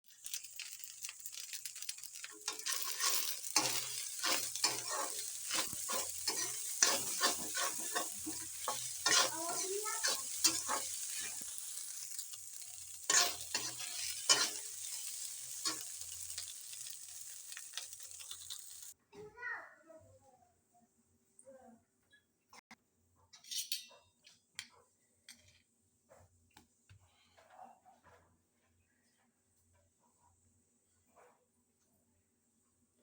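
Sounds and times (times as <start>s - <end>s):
food sizzling in a pan: 0.0s - 19.0s
spatula scraping pan: 0.3s - 18.9s.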